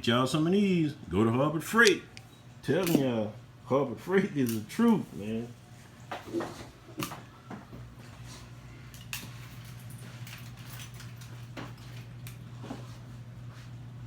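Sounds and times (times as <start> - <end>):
steady low hum: 0.0 - 14.0
tools and wire clicking: 1.8 - 3.1, 4.4 - 5.0, 8.9 - 12.5.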